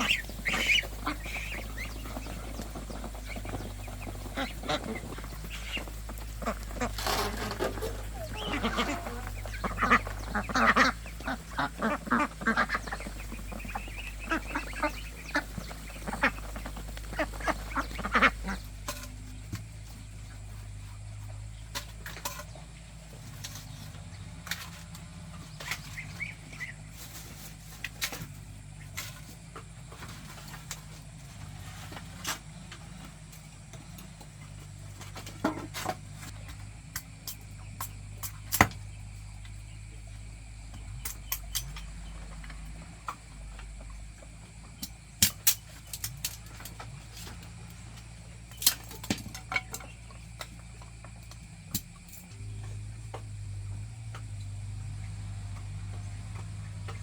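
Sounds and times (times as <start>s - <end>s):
ducks quacking: 0.0s - 19.4s
steady low hum: 0.0s - 57.0s.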